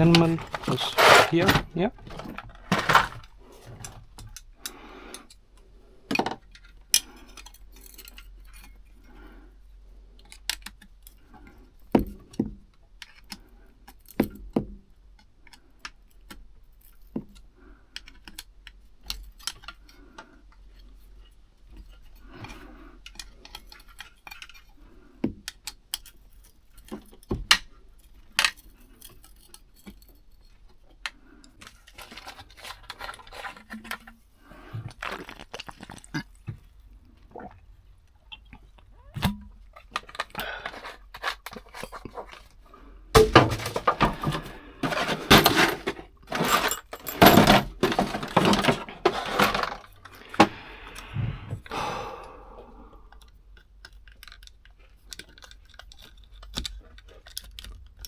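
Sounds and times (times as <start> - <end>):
metal tools clinking: 0.0 - 4.0, 43.2 - 50.5.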